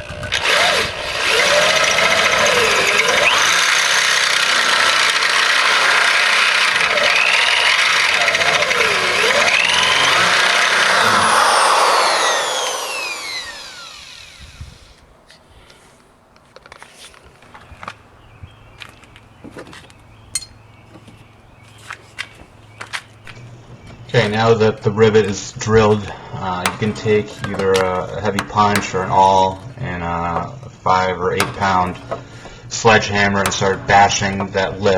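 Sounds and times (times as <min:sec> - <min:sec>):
electric drill boring into steel: 0:00.0 - 0:15.0, 0:23.3 - 0:34.9.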